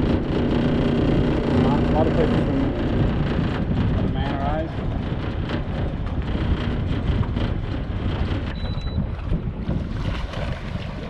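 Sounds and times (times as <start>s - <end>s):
wind buffeting microphone: 0.0s - 11.0s
water sounds: 4.8s - 11.0s.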